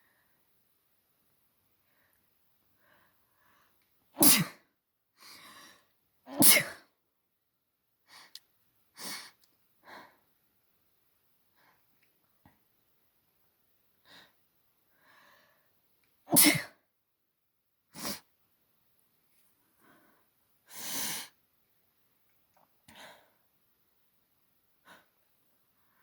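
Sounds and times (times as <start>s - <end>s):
woman sneezing: 4.2s - 4.6s, 6.3s - 6.8s, 16.3s - 16.8s.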